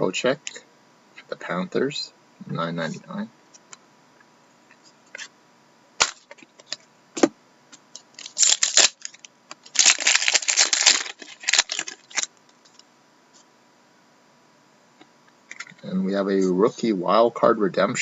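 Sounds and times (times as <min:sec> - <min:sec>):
packaging rustling and crinkling: 0:08.1 - 0:12.8.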